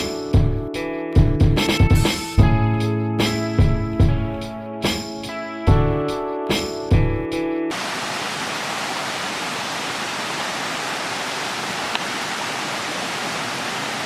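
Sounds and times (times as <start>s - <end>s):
music: 0.0s - 7.7s
faint click: 11.9s - 12.1s.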